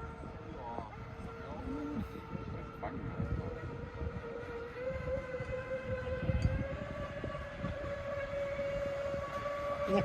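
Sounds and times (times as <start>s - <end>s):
boat motor whining: 0.0s - 10.0s.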